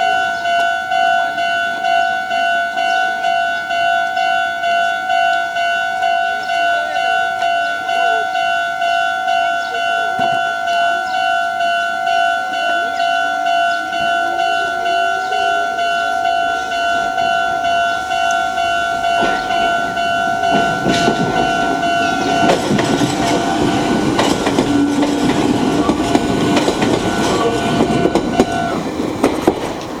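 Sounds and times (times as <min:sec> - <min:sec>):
level crossing bell ringing: 0:00.0 - 0:29.0
train wheels clattering over rail joints: 0:17.0 - 0:30.0.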